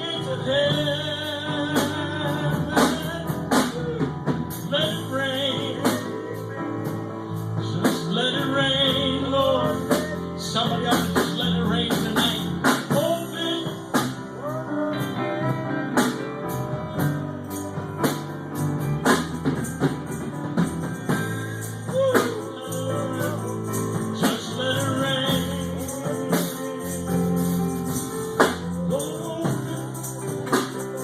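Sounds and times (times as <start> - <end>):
gospel band playing: 0.0 - 31.0
wordless singing: 21.7 - 31.0.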